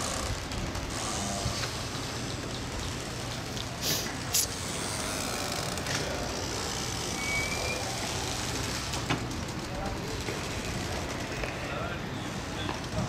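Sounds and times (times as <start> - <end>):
traffic noise: 0.0 - 13.0
short hisses: 3.8 - 4.6.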